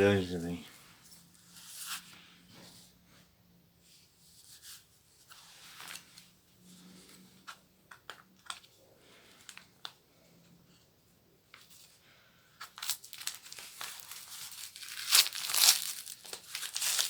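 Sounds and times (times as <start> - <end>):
paper rustling: 12.6 - 17.0.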